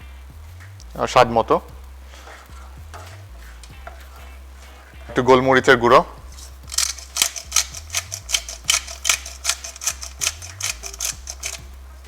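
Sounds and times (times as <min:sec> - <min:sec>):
pepper grinder clicking: 0:06.6 - 0:11.7.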